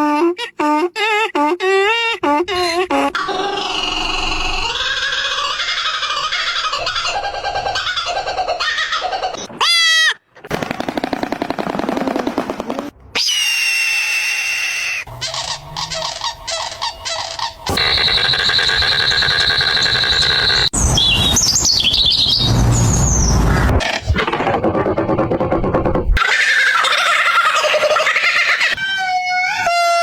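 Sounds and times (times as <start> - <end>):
animal and bird calls: 3.1 - 9.5, 13.3 - 24.2.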